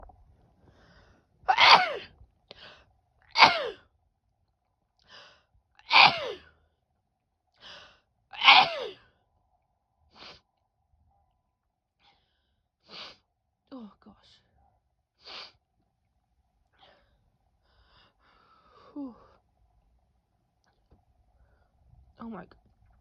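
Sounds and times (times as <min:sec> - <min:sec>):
woman breathing: 0:00.6 - 0:01.4, 0:02.5 - 0:02.9, 0:05.0 - 0:05.5, 0:07.6 - 0:08.1, 0:12.0 - 0:13.3, 0:16.7 - 0:19.5
woman sneezing: 0:01.5 - 0:02.0, 0:05.9 - 0:06.4, 0:08.4 - 0:09.0.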